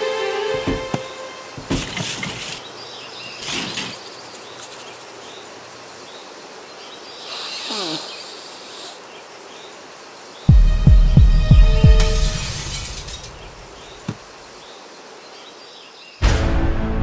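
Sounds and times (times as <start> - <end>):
steady hiss: 0.0 - 10.5
faint bird or insect chirps: 1.3 - 10.5, 12.5 - 16.2.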